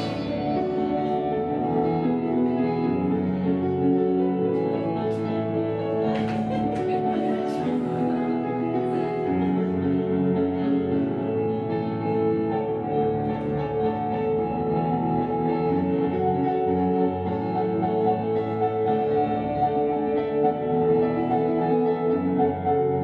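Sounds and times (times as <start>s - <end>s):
plucked guitar: 0.0s - 23.0s
slow instrumental music: 0.0s - 23.0s.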